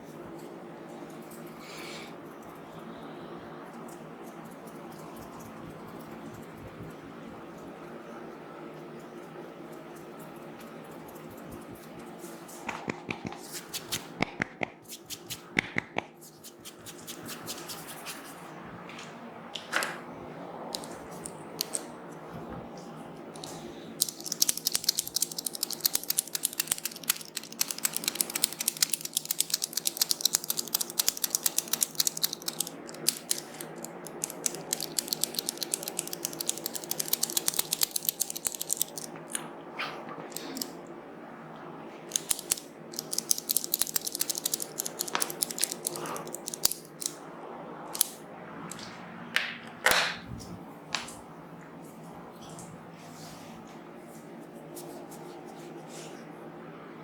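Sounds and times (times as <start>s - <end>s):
fingers crackling in hair: 9.7s - 18.4s, 24.0s - 39.4s, 42.2s - 47.1s.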